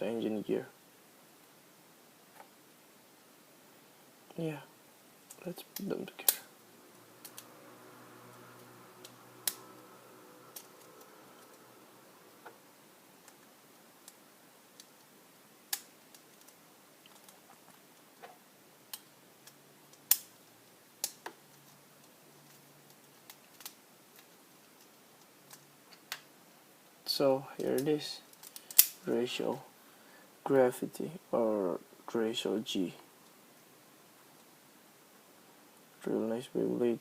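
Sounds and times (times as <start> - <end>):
plastic toy parts clicking: 28.3 - 29.0.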